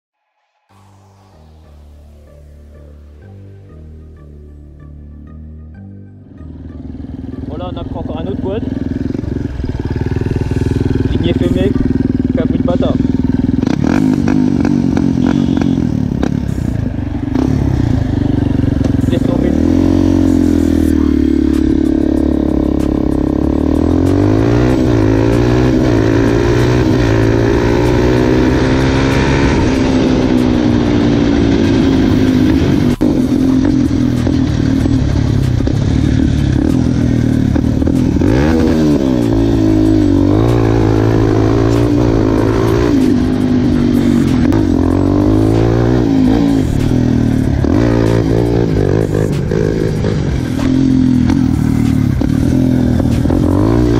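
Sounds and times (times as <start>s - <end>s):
quad bike engine revving: 6.4s - 53.9s.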